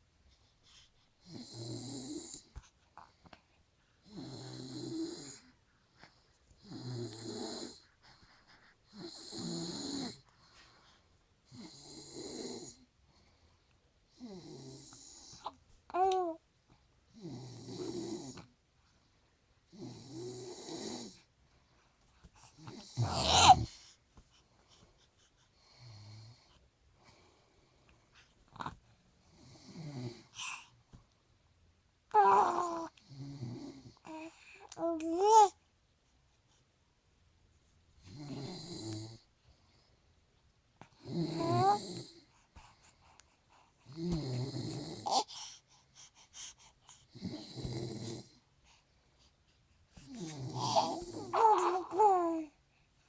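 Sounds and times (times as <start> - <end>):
woman snoring softly: 1.3 - 2.4, 4.0 - 5.5, 6.6 - 7.8, 8.9 - 10.2, 11.5 - 12.8, 17.2 - 18.4, 19.7 - 21.2, 22.7 - 23.7, 38.1 - 39.2, 41.0 - 42.3, 43.9 - 45.3, 47.1 - 48.4, 50.1 - 52.4
woman snoring: 22.9 - 23.7.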